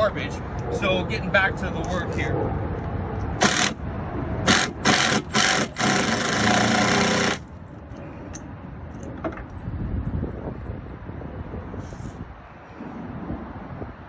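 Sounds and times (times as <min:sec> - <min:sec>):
power drill driving fastener: 0:03.4 - 0:03.8, 0:04.5 - 0:07.5.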